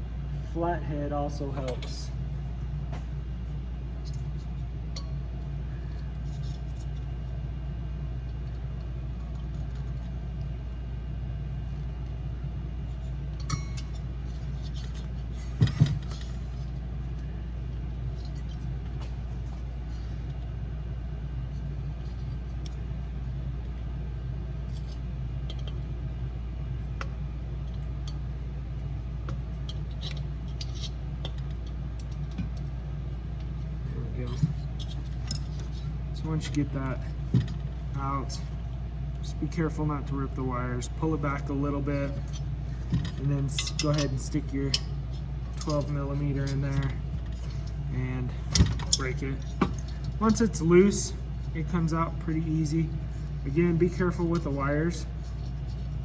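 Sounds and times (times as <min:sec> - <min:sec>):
steady low hum: 0:00.0 - 0:56.0
hand tools clinking on metal: 0:43.0 - 0:44.9.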